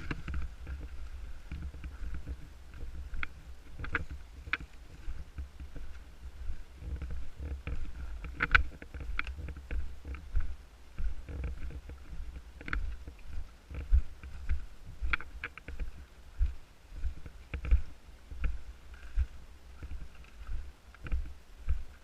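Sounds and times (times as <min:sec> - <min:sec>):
low wind rumble on microphone: 0:00.0 - 0:22.0
sharp clicks and cracks: 0:01.5 - 0:04.8, 0:06.8 - 0:10.2, 0:15.0 - 0:15.9.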